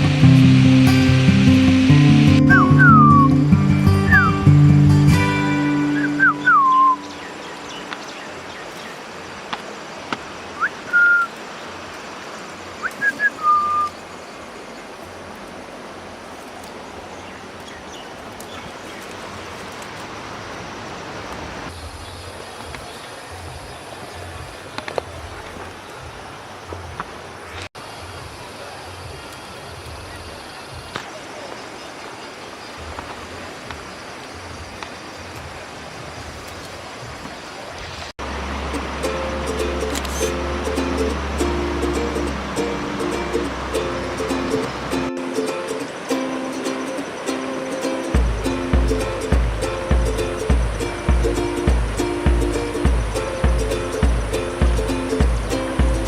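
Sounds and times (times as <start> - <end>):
river rushing: 0.0 - 56.0
whistled notes: 2.3 - 4.5, 5.1 - 7.2, 10.6 - 11.3, 12.8 - 13.9
wind rumble on microphone: 48.2 - 56.0.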